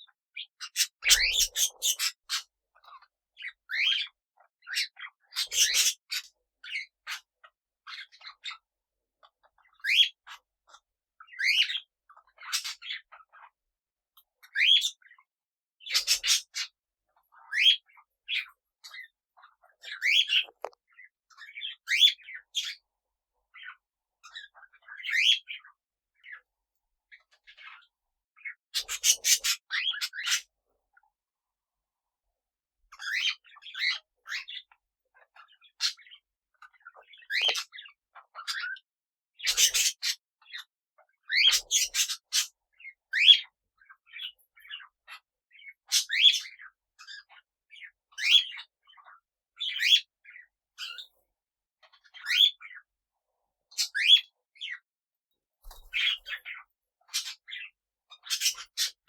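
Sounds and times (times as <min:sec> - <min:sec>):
parrots chirping: 0:00.4 - 0:06.9, 0:15.9 - 0:16.7, 0:17.4 - 0:22.8, 0:27.2 - 0:30.5, 0:33.0 - 0:38.8, 0:39.4 - 0:40.6, 0:41.3 - 0:43.5, 0:45.6 - 0:46.4, 0:52.2 - 0:52.8, 0:53.8 - 0:54.8, 0:55.7 - 0:59.0.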